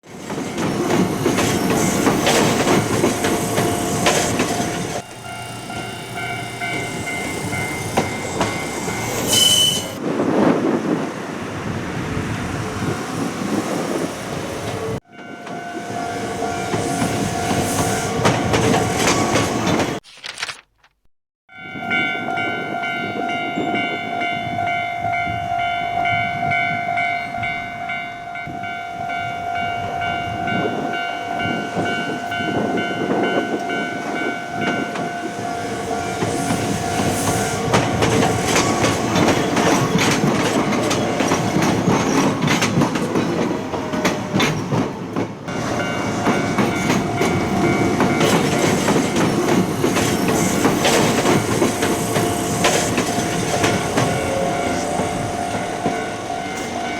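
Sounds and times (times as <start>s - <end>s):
crossing warning bell ringing: 0.1s - 10.0s, 15.0s - 19.8s, 21.5s - 44.8s, 45.5s - 56.9s
train wheels clattering: 0.1s - 10.0s, 16.6s - 20.0s, 31.4s - 56.9s.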